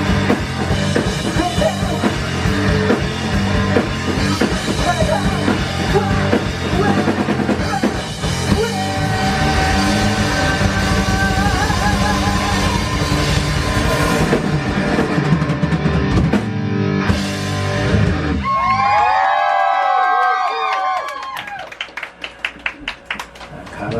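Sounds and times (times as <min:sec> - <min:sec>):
rock band playing live: 0:00.0 - 0:18.9.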